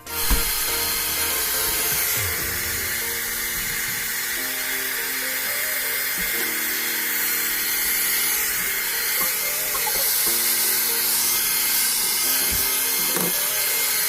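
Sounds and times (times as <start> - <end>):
hair dryer blowing: 0.0 - 14.0.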